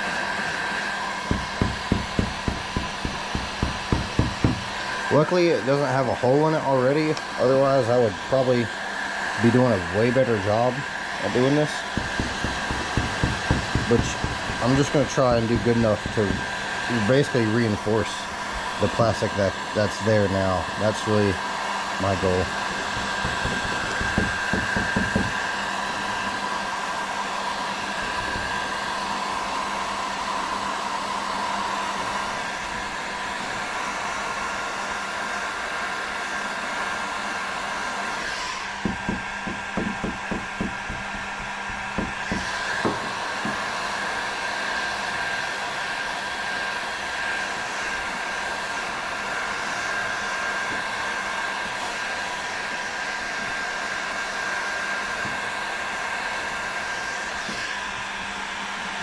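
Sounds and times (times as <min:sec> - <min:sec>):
heat gun blowing: 0:00.0 - 0:05.3, 0:08.4 - 0:35.3, 0:37.8 - 0:45.4
light knocks: 0:01.3 - 0:04.8, 0:12.0 - 0:16.6, 0:22.7 - 0:25.4, 0:38.8 - 0:43.6.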